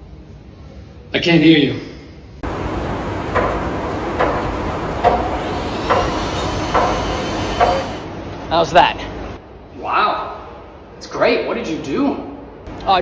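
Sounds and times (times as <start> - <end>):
loud steady background noise: 0.0 - 13.0
regular knocking: 2.4 - 8.5.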